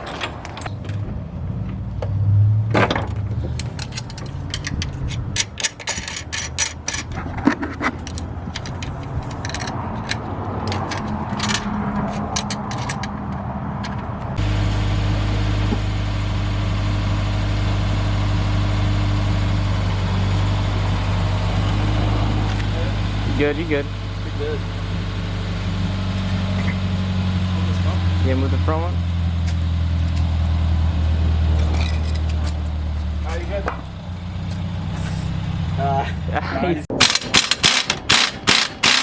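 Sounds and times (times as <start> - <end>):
metal clicks and knocks: 0.0 - 1.1, 2.7 - 14.2, 36.9 - 39.0
car engine idling: 0.0 - 39.0.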